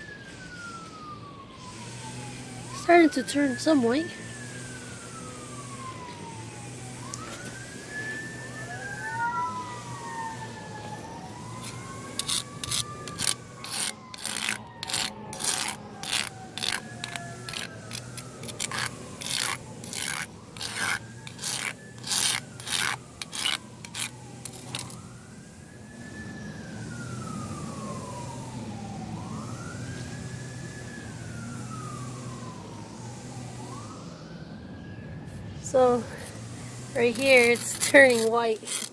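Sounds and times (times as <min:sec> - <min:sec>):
sirens wailing: 0:00.0 - 0:38.9
rasping scrape strokes: 0:11.4 - 0:25.0, 0:37.0 - 0:38.9.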